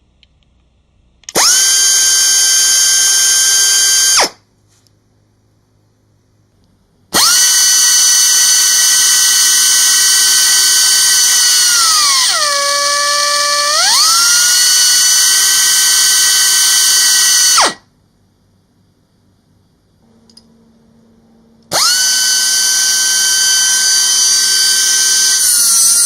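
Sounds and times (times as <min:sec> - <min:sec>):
pneumatic grinder whining: 0:01.3 - 0:04.4, 0:07.1 - 0:17.8, 0:21.6 - 0:26.0.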